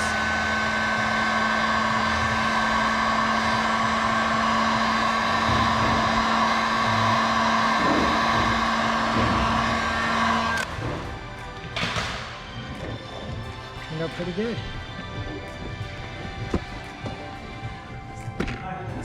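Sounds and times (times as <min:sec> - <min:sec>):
heat gun whining: 0:00.0 - 0:19.0.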